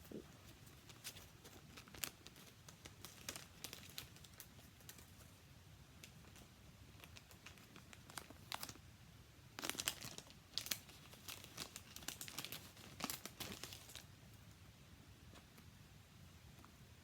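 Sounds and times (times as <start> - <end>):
packaging crinkling: 0.4 - 5.3, 6.0 - 8.8, 9.6 - 14.1.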